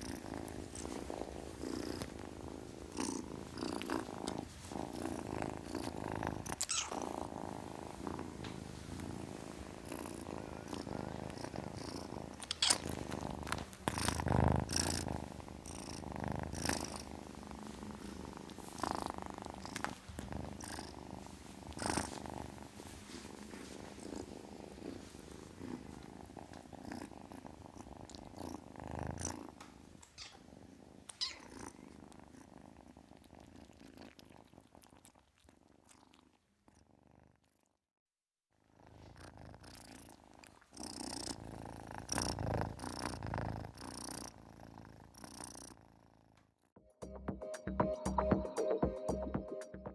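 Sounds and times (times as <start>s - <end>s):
kitten purring: 0.0s - 37.9s, 38.6s - 46.7s
rustling and scuffing: 21.1s - 26.1s.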